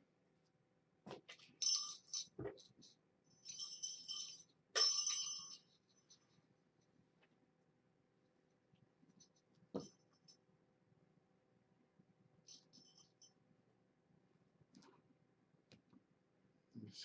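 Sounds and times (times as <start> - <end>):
small metal bells jingling: 1.6 - 6.3, 12.4 - 13.4.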